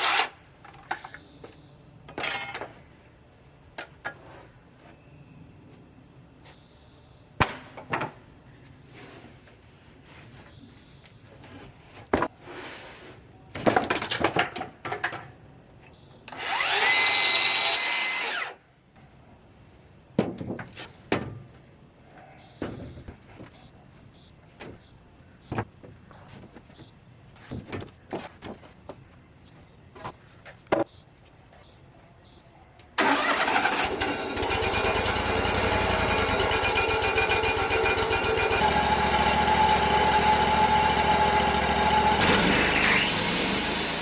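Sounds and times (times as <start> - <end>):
wooden boards clattering: 13.6 - 15.4
electric saw cutting: 16.3 - 18.6, 33.8 - 44.0.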